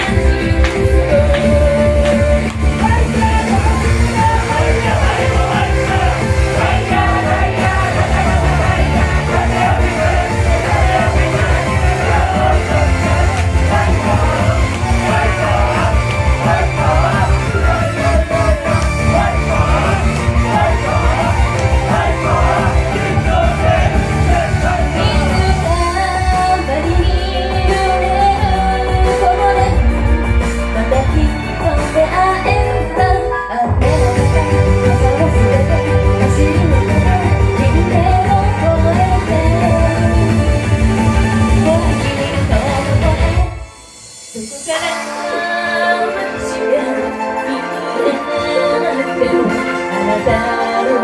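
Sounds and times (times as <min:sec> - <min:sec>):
woman singing: 0:00.0 - 0:08.1, 0:24.9 - 0:40.6, 0:41.6 - 0:43.6, 0:44.4 - 0:51.0
pop song with rock band: 0:00.0 - 0:51.0.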